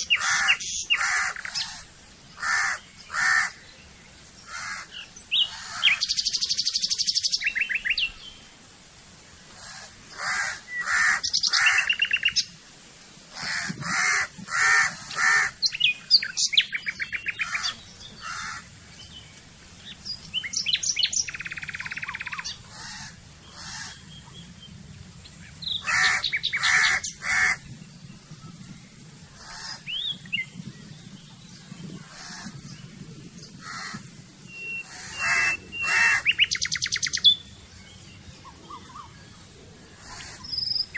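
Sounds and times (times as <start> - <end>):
birds chirping and trilling: 0.0 - 8.7, 9.3 - 40.9
short harsh bird calls: 34.6 - 37.3.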